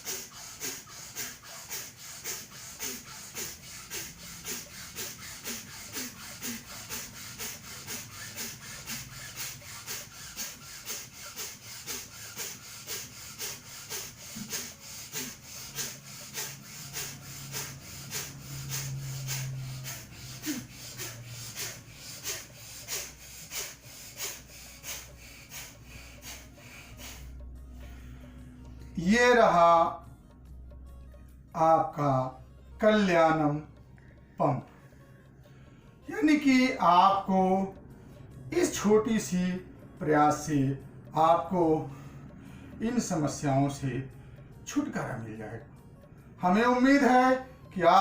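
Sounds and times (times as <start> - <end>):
forceful breaths through nose: 0.0 - 28.9.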